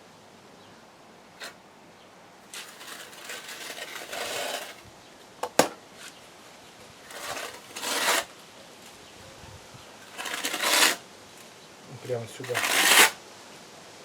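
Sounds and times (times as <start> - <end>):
trowel scraping adhesive: 2.5 - 4.8, 7.1 - 8.3, 10.1 - 11.0, 12.4 - 13.2.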